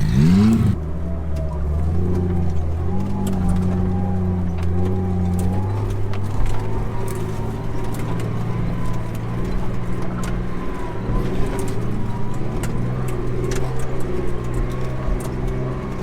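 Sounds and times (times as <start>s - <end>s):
truck engine under load: 0.0s - 0.8s.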